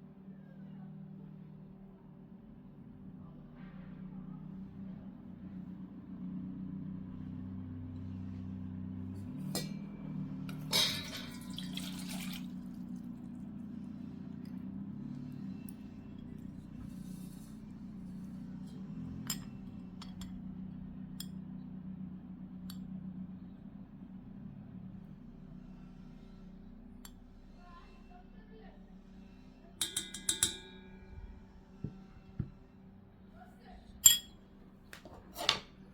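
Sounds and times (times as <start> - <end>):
steady low hum: 0.0 - 34.9
glass clinking: 10.5 - 12.4, 18.6 - 20.4, 29.8 - 31.1, 34.0 - 34.4
liquid pouring: 10.8 - 13.2.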